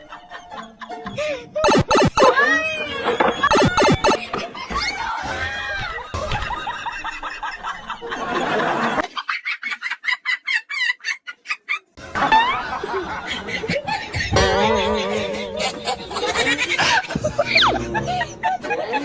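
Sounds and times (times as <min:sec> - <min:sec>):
music: 0:00.0 - 0:02.8, 0:14.2 - 0:19.0
rapid high chirps: 0:01.6 - 0:02.3, 0:03.5 - 0:04.2
squeaky laugh-like sounds: 0:14.1 - 0:19.0.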